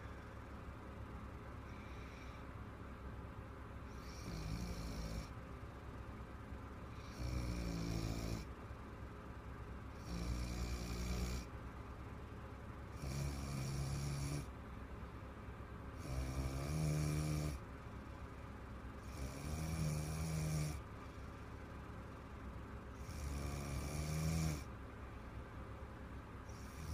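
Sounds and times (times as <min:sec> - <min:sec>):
quiet breathing: 0:00.0 - 0:06.2, 0:06.8 - 0:26.9
woman snoring: 0:03.9 - 0:05.3, 0:06.9 - 0:08.5, 0:10.0 - 0:11.5, 0:13.0 - 0:14.5, 0:16.0 - 0:17.6, 0:19.0 - 0:20.8, 0:23.0 - 0:24.7, 0:26.5 - 0:26.9.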